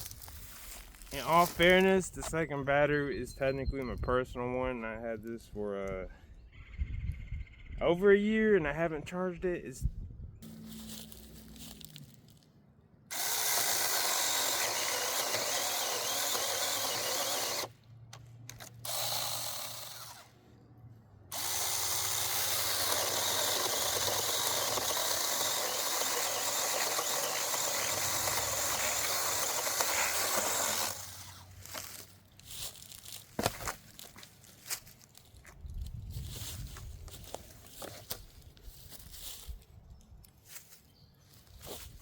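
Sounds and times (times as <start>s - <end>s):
mini chainsaw running: 13.1s - 17.7s, 18.6s - 20.4s, 21.3s - 32.0s.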